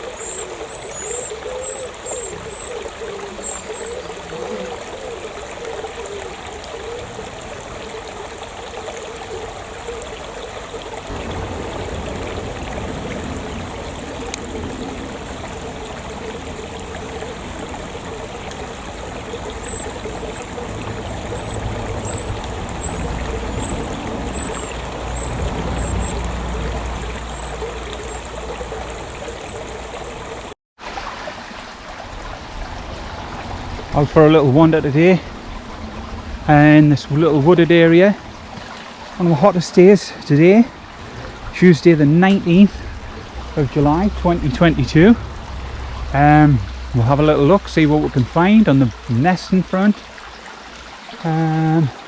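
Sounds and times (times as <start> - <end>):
stream trickling and babbling: 0.0 - 52.0
low rumble: 11.1 - 29.2, 42.8 - 48.0.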